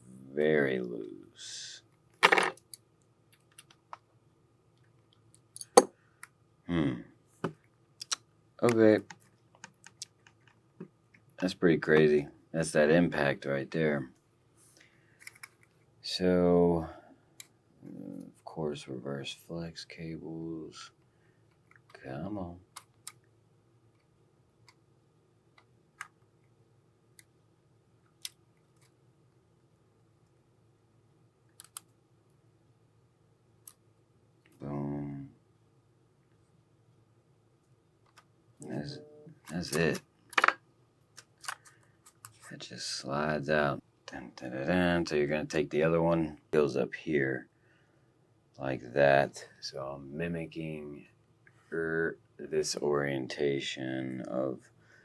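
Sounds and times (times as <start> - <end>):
faint steady hum: 0.0 - 55.0
small parts clicking and tapping: 8.0 - 11.5, 15.1 - 15.8, 31.5 - 31.9, 39.4 - 42.5.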